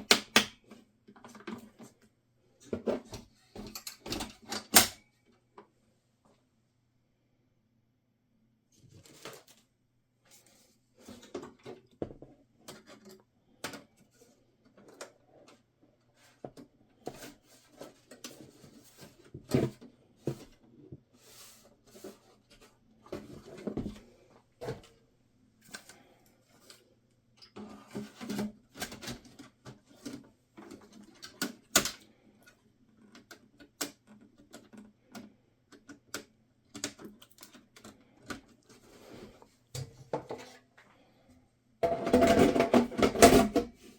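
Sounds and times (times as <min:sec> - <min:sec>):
hands clicking and tapping computer parts: 0:00.0 - 0:01.9, 0:28.8 - 0:38.6.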